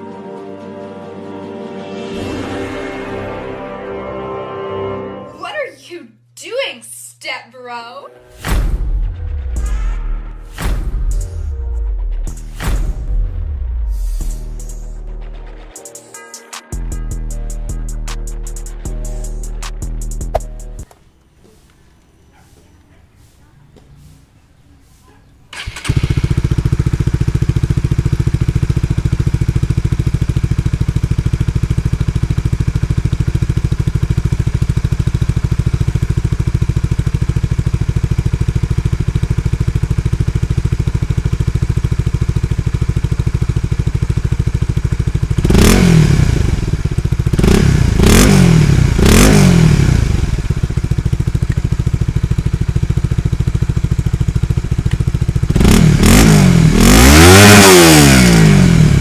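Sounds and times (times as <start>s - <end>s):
quick throttle revs: 25.5s - 29.1s, 55.4s - 59.0s
motorcycle engine idling: 25.5s - 59.0s.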